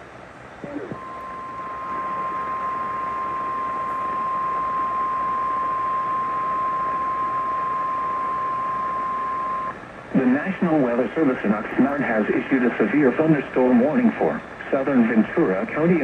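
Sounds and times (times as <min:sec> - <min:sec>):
radio hiss: 0:00.6 - 0:07.9, 0:08.5 - 0:16.0
long steady alarm beep: 0:01.0 - 0:09.8.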